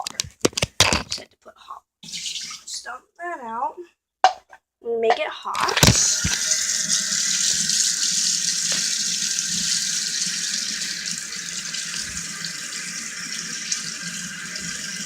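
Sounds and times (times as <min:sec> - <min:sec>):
water splashing into sink basin: 0:05.6 - 0:15.0.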